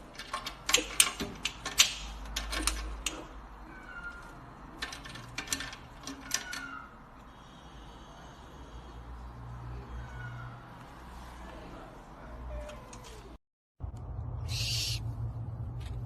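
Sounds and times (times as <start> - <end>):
cat meowing softly: 9.7 - 10.7.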